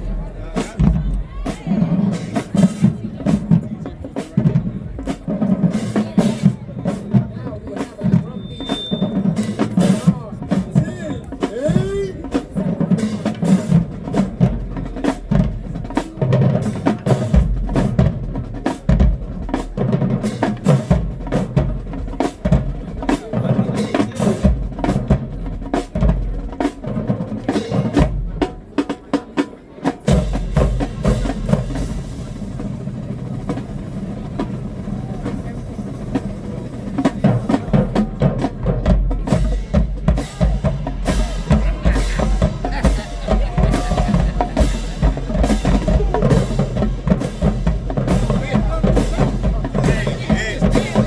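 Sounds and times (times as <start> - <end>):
rapid snare drum strikes: 0.0 - 33.7, 35.1 - 51.0
bass drum strokes: 30.1 - 51.0.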